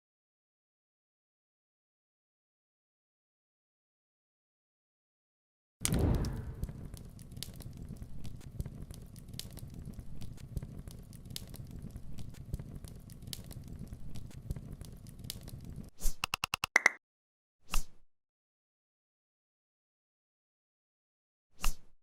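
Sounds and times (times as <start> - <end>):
low rumble: 5.8 - 15.9
crackling pops and snaps: 5.8 - 17.0.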